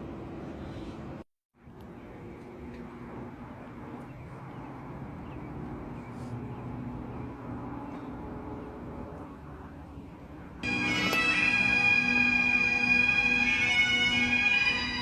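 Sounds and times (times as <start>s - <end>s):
helicopter flying over: 6.8s - 15.0s.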